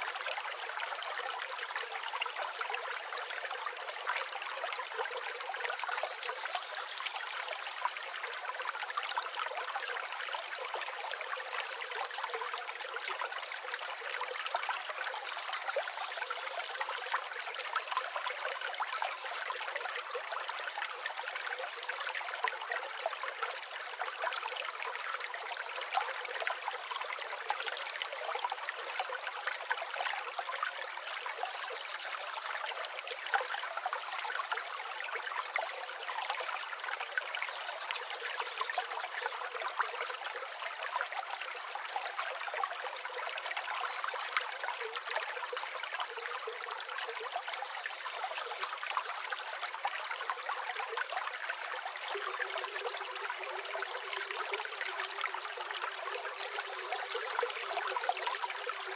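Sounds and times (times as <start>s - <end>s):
river water flowing over stones: 0.0s - 58.9s
faint high bird chirps: 17.5s - 18.6s.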